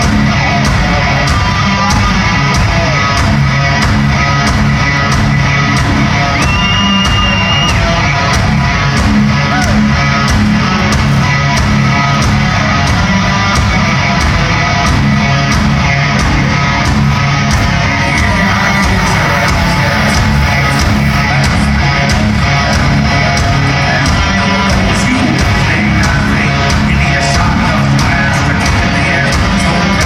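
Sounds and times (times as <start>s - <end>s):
electric guitar: 0.0s - 30.0s
rock drums: 0.0s - 30.0s.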